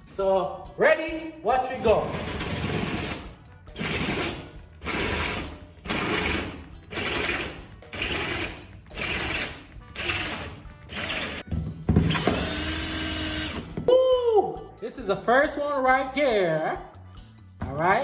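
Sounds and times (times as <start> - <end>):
electric drill drilling metal: 3.8 - 11.4, 12.1 - 13.7.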